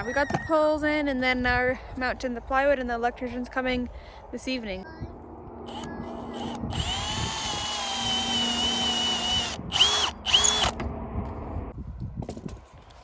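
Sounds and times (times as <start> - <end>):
power drill driving screws: 5.7 - 10.8.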